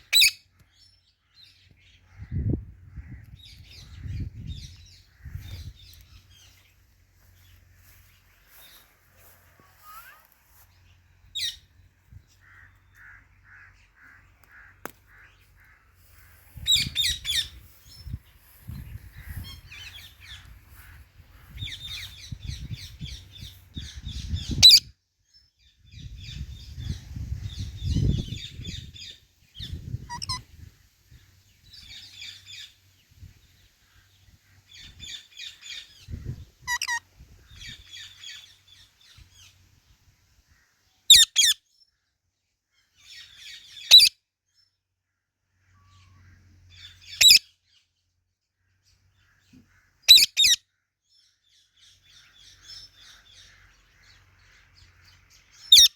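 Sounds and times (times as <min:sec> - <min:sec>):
parrot shrill calls: 0:00.1 - 0:00.4, 0:30.1 - 0:30.4, 0:43.9 - 0:44.1, 0:47.2 - 0:47.4, 0:50.1 - 0:50.6.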